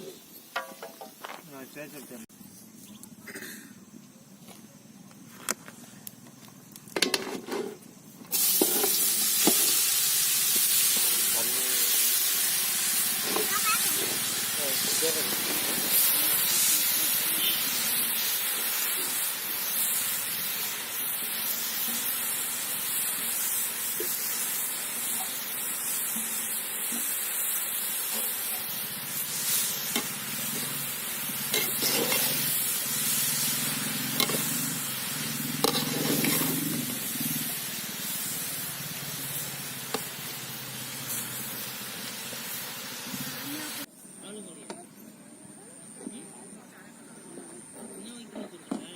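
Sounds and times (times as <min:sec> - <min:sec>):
pumpkin sizzling in a pan: 0:07.1 - 0:43.9
spoon scraping a pan: 0:31.5 - 0:32.5, 0:34.2 - 0:34.6, 0:35.6 - 0:36.6.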